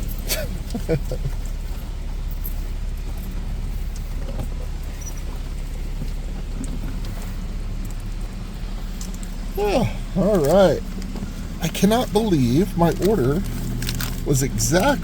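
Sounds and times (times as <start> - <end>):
car engine idling: 0.0 - 15.0
heavy rain on car: 5.7 - 15.0.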